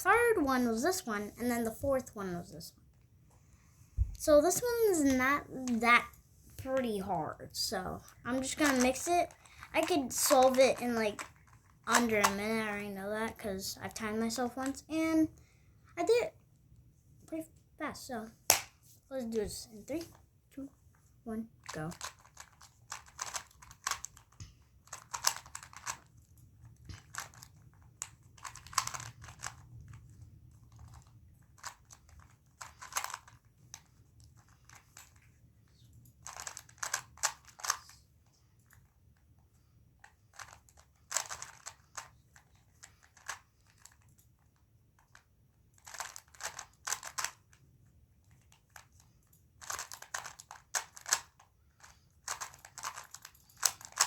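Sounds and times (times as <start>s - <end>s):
puzzle cube clicking: 8.5s - 12.4s, 21.7s - 26.1s.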